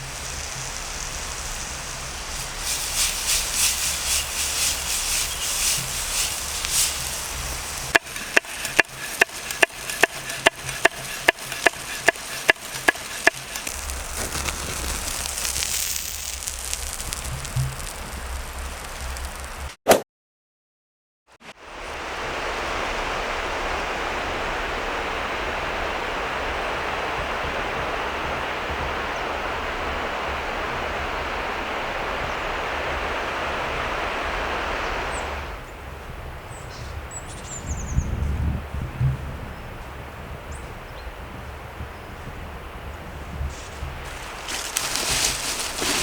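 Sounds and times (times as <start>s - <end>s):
campfire crackling: 0.0s - 19.8s, 43.1s - 46.0s.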